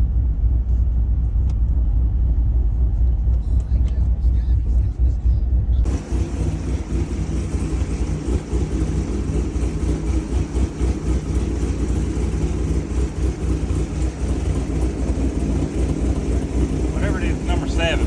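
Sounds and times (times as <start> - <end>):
misfiring car engine: 5.8 - 18.0.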